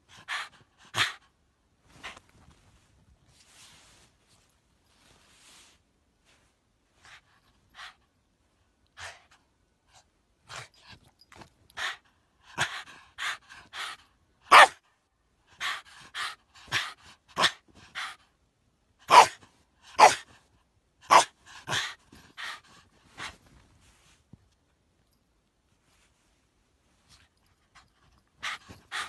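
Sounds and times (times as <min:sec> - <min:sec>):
dog huffing and barking: 0:14.5 - 0:14.8, 0:19.1 - 0:20.2, 0:21.1 - 0:22.6.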